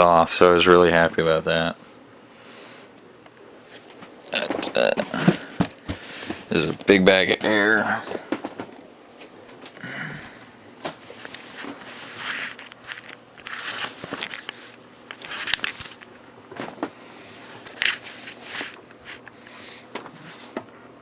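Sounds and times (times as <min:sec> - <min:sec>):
plastic packaging rustling: 0:10.9 - 0:16.8, 0:17.6 - 0:19.3.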